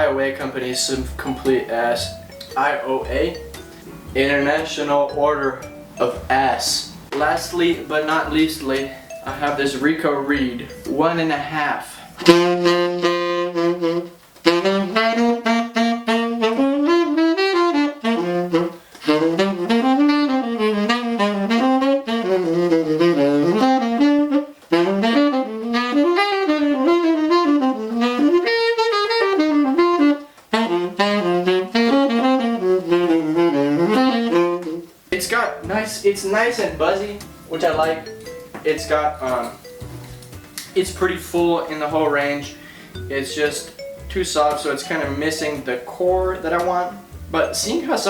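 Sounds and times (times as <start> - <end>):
solo saxophone jazz phrases: 0.0 - 48.0
player breathing: 42.5 - 43.1.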